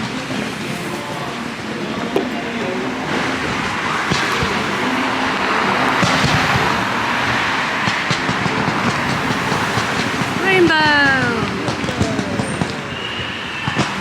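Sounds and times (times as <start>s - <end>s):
moving vehicle running noise: 0.0s - 10.7s.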